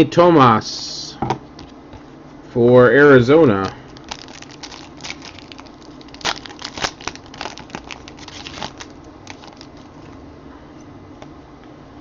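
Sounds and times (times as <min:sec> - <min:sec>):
wrappers crinkling and rustling: 0:03.9 - 0:10.2.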